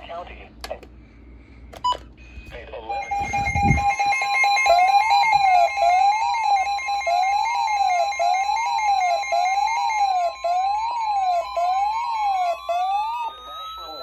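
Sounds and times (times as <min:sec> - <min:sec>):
steady high alert tone: 0:02.8 - 0:14.0
rising and falling siren tone: 0:02.9 - 0:14.0
tone gliding upward: 0:02.9 - 0:14.0.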